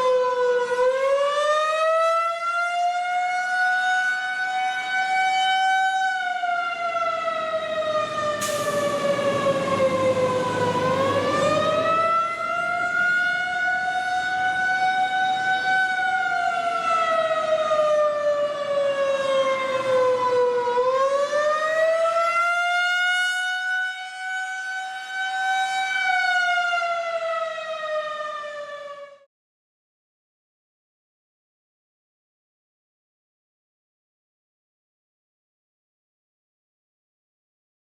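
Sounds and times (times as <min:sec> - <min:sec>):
tornado warning siren: 0:00.0 - 0:29.3.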